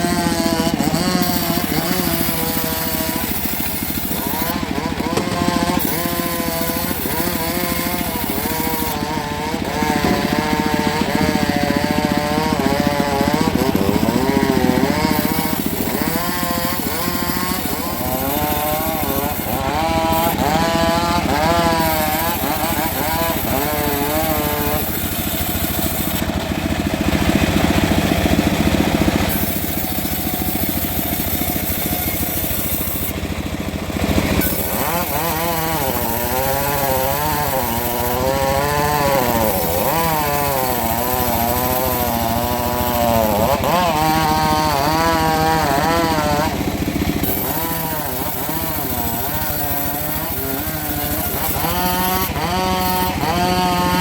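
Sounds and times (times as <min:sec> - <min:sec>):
engine-driven saw cutting wood: 0:00.0 - 0:54.0.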